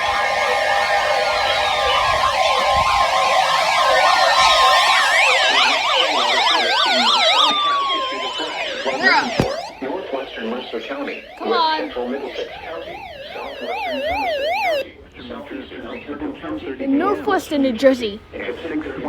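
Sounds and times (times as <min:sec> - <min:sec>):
electronic sirens yelping: 0:00.0 - 0:14.8.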